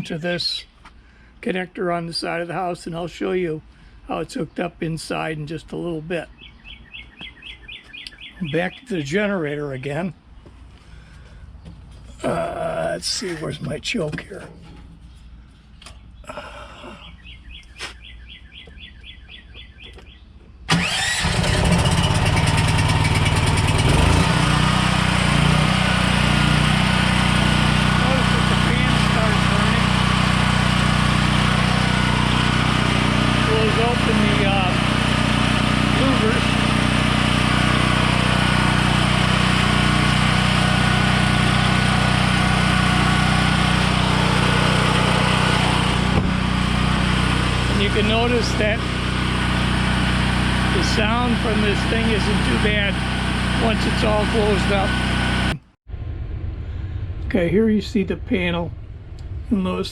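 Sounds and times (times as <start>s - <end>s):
generator engine running: 20.7s - 55.7s.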